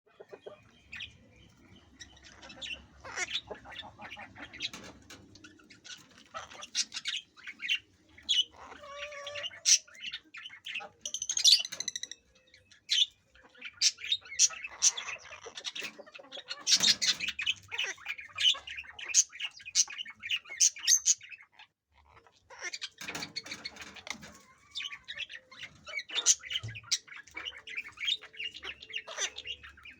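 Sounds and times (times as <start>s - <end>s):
parrots squawking and chirping: 0.1s - 29.9s.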